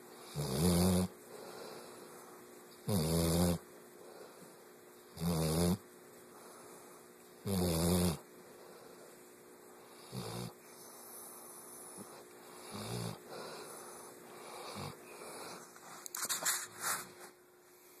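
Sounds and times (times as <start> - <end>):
person snoring: 0.3 - 1.1.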